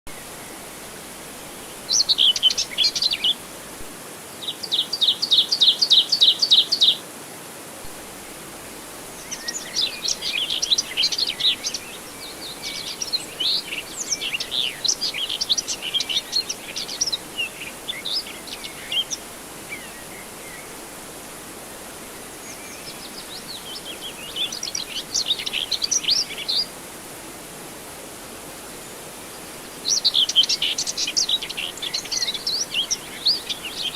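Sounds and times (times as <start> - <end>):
background hiss: 0.1 - 33.9
songbirds chirping: 0.1 - 33.9.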